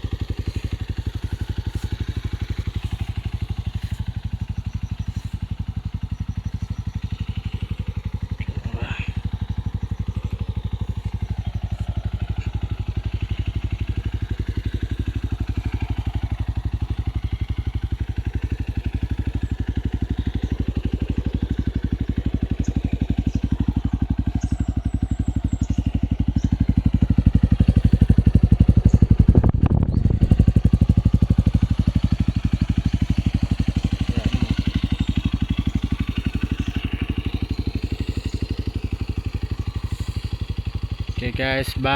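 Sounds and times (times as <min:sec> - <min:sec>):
motorcycle engine idling: 0:00.0 - 0:41.9.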